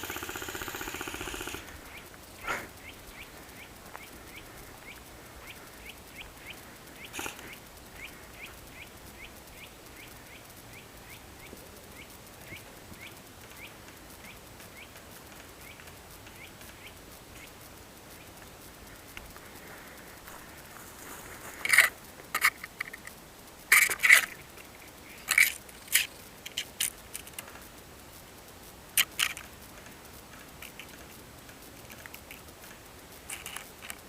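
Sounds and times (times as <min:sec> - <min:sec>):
bird chirping: 0:00.0 - 0:02.1, 0:02.8 - 0:15.0, 0:15.6 - 0:17.6.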